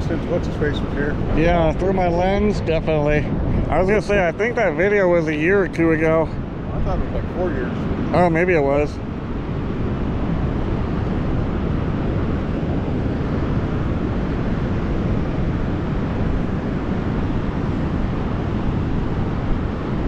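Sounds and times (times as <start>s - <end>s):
ocean surf rushing: 0.0s - 20.0s
wind buffeting microphone: 0.0s - 20.0s.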